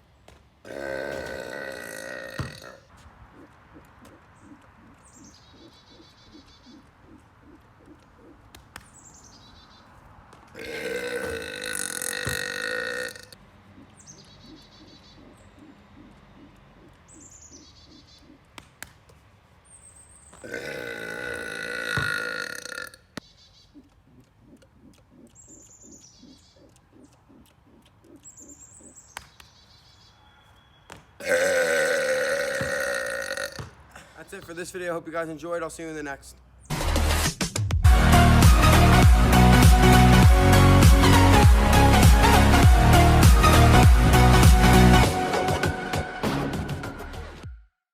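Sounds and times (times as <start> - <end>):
loud belches: 0.7 - 2.9, 10.6 - 13.4, 20.4 - 23.0, 31.2 - 33.6
faint bird chirps: 3.3 - 9.9, 13.7 - 18.5, 23.2 - 31.2.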